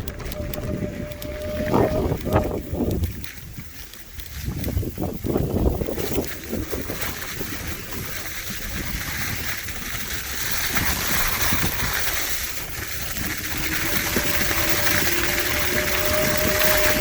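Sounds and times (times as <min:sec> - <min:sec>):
wind rushing over microphone: 0:00.0 - 0:17.0
steady high tone: 0:13.4 - 0:17.0.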